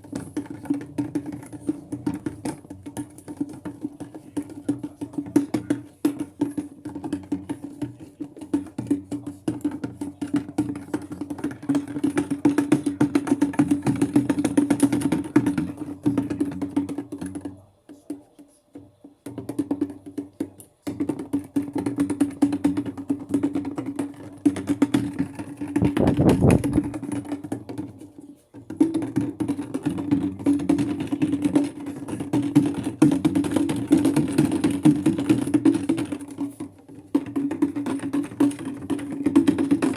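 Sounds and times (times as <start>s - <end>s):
washing machine clattering and sloshing: 24.8s - 27.5s.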